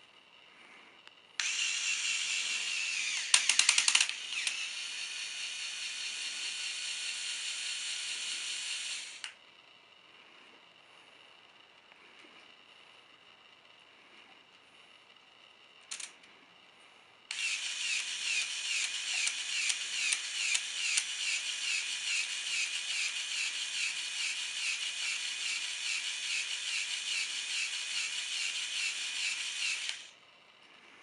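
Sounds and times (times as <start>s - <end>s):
toy motor whirring and clicking: 1.4s - 9.4s, 15.9s - 16.2s, 17.3s - 30.2s.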